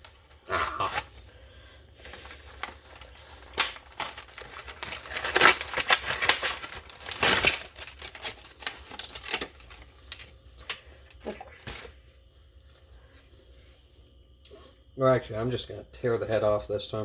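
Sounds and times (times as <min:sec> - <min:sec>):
candy wrapper crinkling: 0:02.0 - 0:11.9.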